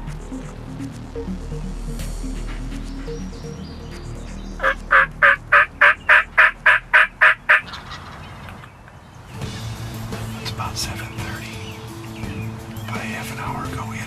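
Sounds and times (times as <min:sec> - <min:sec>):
turkey yelps: 0:04.6 - 0:08.7.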